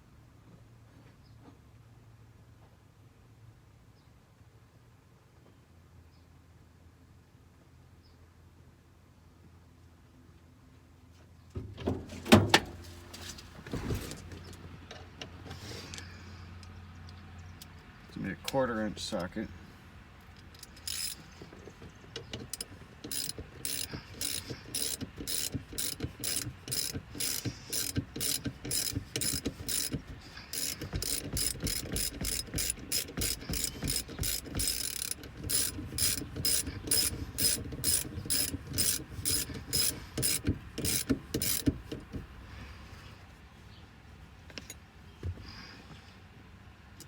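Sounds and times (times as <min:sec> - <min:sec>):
socket ratchet clicking: 0:20.4 - 0:21.3, 0:22.2 - 0:42.1.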